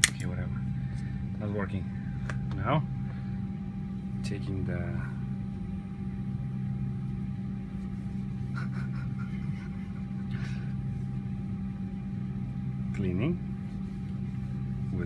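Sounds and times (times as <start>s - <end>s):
low mechanical hum: 0.0s - 15.0s
soft rubbing noises: 13.5s - 14.9s.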